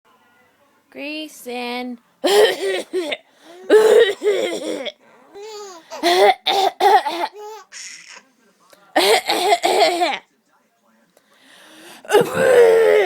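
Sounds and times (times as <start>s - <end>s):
woman coughing: 2.2s - 5.0s, 5.9s - 7.3s, 9.0s - 10.2s, 12.1s - 13.0s
baby laughing: 5.1s - 6.3s, 7.1s - 8.2s.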